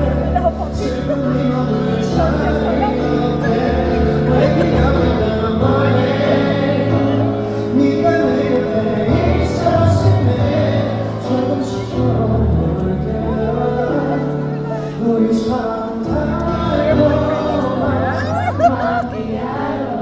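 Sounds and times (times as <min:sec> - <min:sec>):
voices singing: 0:00.0 - 0:20.0.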